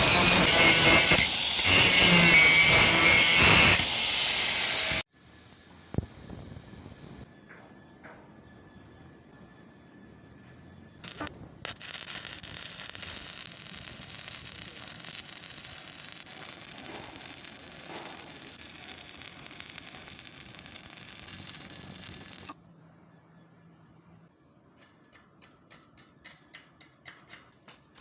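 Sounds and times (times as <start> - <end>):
welding arc crackling: 0.0 - 5.0, 11.0 - 22.6.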